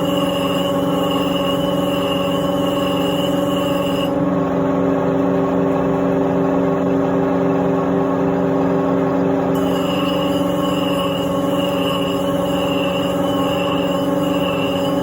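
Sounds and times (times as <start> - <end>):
sharpening machine motor hum: 0.0 - 4.4, 9.5 - 15.0
higher whine: 0.0 - 15.0.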